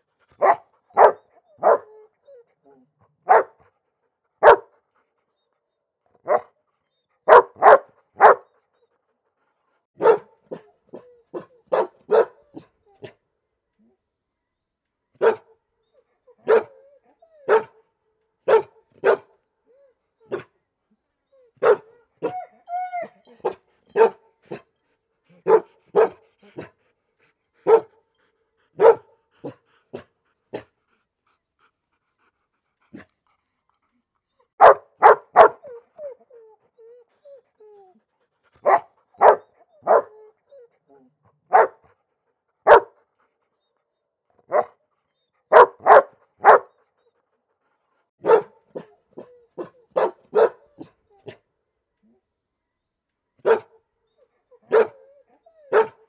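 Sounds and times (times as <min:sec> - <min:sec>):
dog barking: 0:00.4 - 0:01.9, 0:03.2 - 0:03.6, 0:04.4 - 0:04.7, 0:06.2 - 0:06.5, 0:07.3 - 0:08.5, 0:10.0 - 0:10.6, 0:11.4 - 0:12.4, 0:15.2 - 0:15.5, 0:16.4 - 0:16.7, 0:17.5 - 0:17.7, 0:18.5 - 0:19.3, 0:21.6 - 0:21.9, 0:23.4 - 0:24.2, 0:25.4 - 0:26.2, 0:27.6 - 0:27.9, 0:28.8 - 0:29.6, 0:34.6 - 0:35.7, 0:38.6 - 0:40.1, 0:41.5 - 0:41.8, 0:42.6 - 0:43.0, 0:44.5 - 0:44.8, 0:45.5 - 0:46.7, 0:48.2 - 0:48.9, 0:49.6 - 0:50.9, 0:53.4 - 0:53.7, 0:54.7 - 0:55.0, 0:55.7 - 0:56.0
dog whimpering: 0:21.3 - 0:23.6
dog whining: 0:21.3 - 0:23.6, 0:54.1 - 0:55.9.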